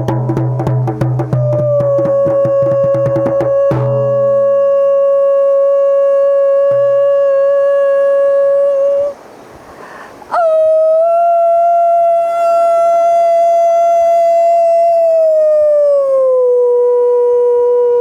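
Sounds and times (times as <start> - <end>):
music of long held notes: 0.0 - 8.7.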